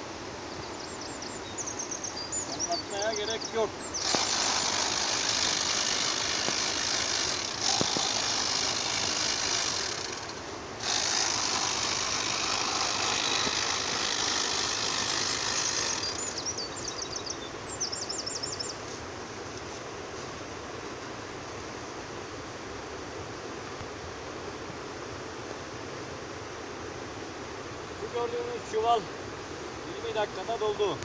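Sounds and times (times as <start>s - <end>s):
faint steady noise: 0.0s - 31.0s
tea harvesting machine whirring: 4.0s - 16.8s.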